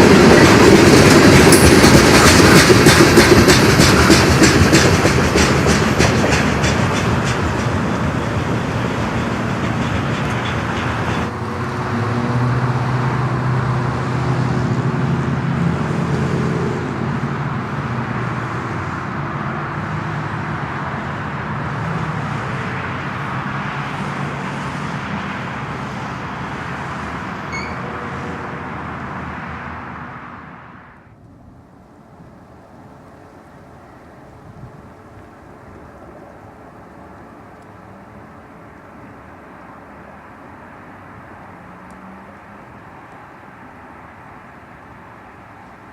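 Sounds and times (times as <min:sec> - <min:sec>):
train wheels clicking over rail joints: 0:00.0 - 0:11.3
diesel locomotive drone: 0:00.0 - 0:45.9.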